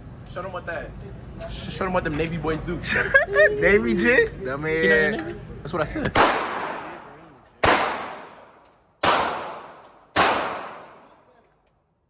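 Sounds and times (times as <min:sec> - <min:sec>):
gunshots with echo: 0:06.2 - 0:11.2.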